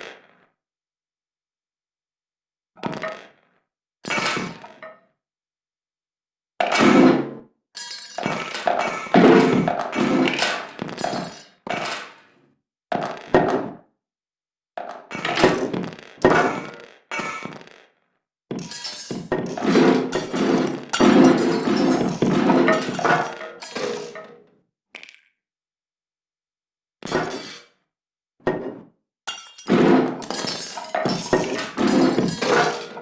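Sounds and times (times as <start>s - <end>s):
crashing and breaking clatter: 7.8s - 12.2s, 18.6s - 24.2s, 29.3s - 33.0s.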